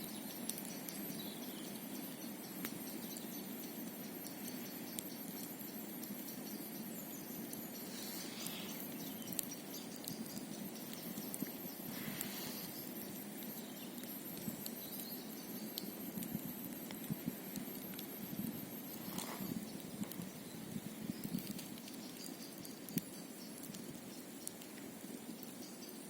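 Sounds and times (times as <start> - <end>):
campfire crackling: 0.0 - 26.0
soft hissing puffs: 7.8 - 9.3, 11.0 - 13.4.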